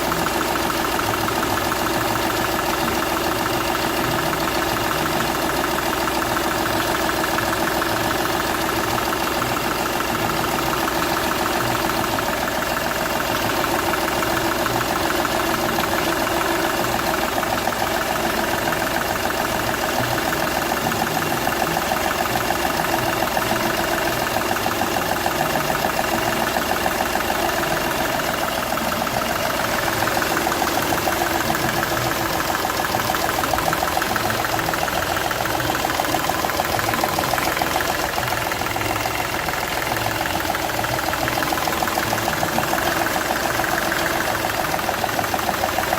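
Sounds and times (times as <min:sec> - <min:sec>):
diesel engine idling: 0:00.0 - 0:45.9.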